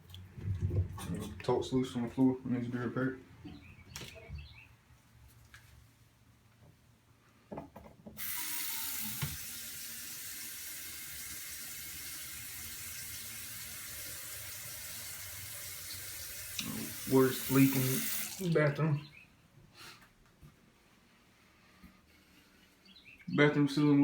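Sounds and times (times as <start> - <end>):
water running from a tap: 8.2 - 18.7.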